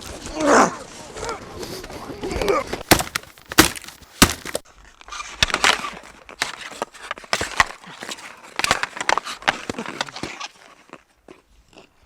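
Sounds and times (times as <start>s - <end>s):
sharp knocks and hits: 2.9s - 4.6s.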